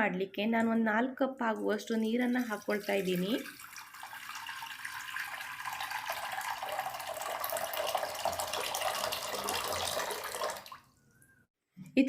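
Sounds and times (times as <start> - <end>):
water pouring into a pot: 1.9 - 10.9.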